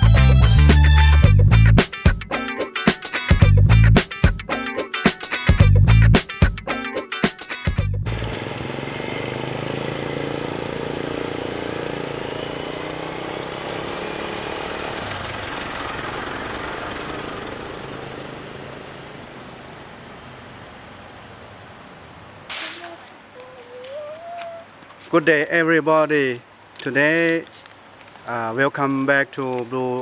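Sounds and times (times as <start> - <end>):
vehicle engine running: 0.0 - 1.8, 7.8 - 20.2
road noise: 0.0 - 2.5, 7.8 - 30.0.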